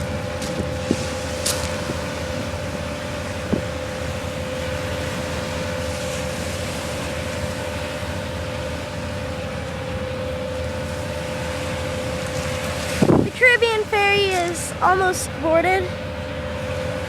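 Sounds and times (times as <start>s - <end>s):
wind on microphone: 0.0s - 4.5s, 12.8s - 14.8s
ferry machinery droning: 0.0s - 17.0s.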